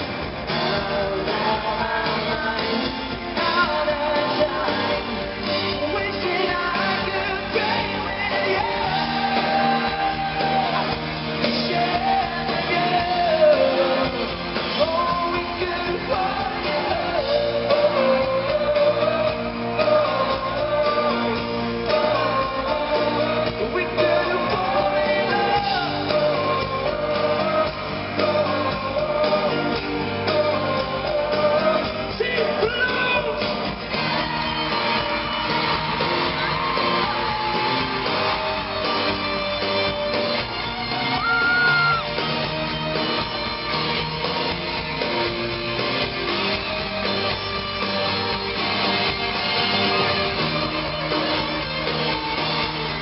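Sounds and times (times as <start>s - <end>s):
person singing: 0.0s - 42.4s
pop-rock band playing live: 0.0s - 53.0s
shouting: 41.1s - 42.2s.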